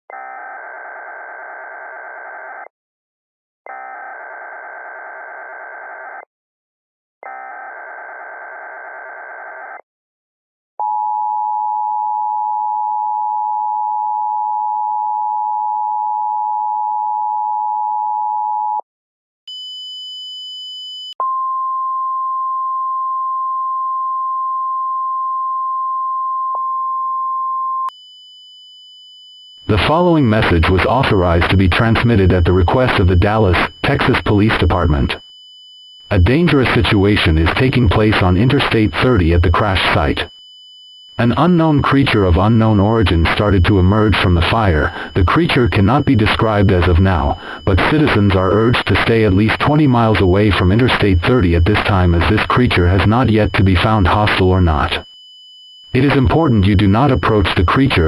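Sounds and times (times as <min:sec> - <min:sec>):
high beep: 0:41.2 - 0:55.2, 0:55.8 - 0:58.0.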